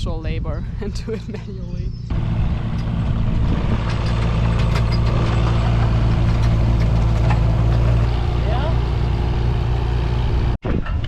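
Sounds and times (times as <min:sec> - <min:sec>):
diesel engine running: 0:02.1 - 0:10.6.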